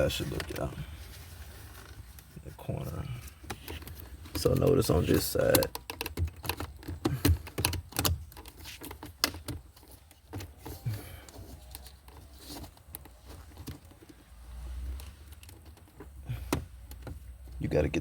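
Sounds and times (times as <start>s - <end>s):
plastic trim clicks and knocks: 3.4s - 10.6s.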